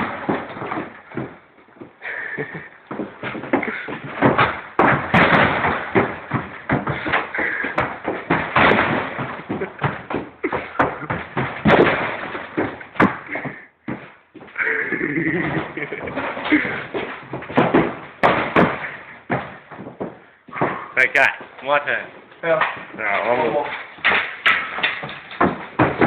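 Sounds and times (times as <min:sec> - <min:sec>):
door being struck with bangs: 0:03.4 - 0:13.3, 0:17.4 - 0:19.5, 0:24.0 - 0:26.0.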